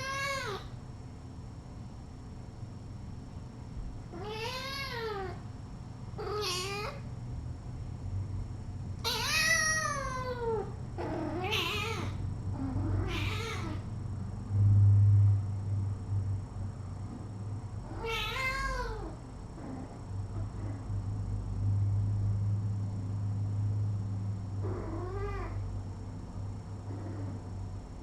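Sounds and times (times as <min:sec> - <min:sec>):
cat meowing: 0:00.0 - 0:00.7, 0:04.1 - 0:05.4, 0:06.2 - 0:07.0, 0:09.0 - 0:13.8, 0:17.9 - 0:19.2, 0:24.6 - 0:25.6
low hum: 0:12.1 - 0:18.0.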